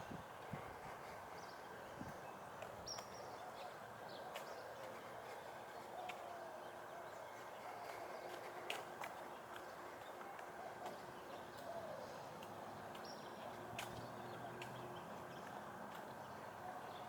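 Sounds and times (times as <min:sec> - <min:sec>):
faint forest ambience: 0:00.0 - 0:17.0
light footsteps on trail: 0:00.0 - 0:17.0.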